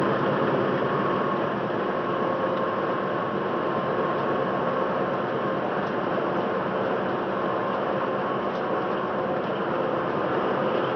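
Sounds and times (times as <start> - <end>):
road noise hiss: 0.0 - 10.9
truck diesel engine rumble: 0.0 - 10.9.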